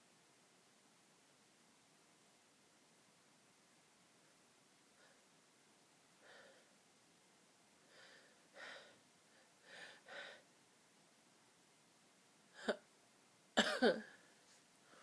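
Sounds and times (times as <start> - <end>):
person breathing softly: 4.9 - 5.3, 6.2 - 6.8, 7.8 - 10.5, 14.4 - 15.0.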